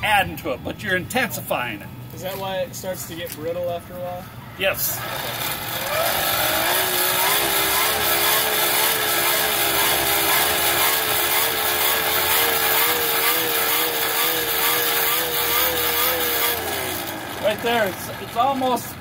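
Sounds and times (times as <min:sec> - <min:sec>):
air blower whining: 0:04.8 - 0:19.0.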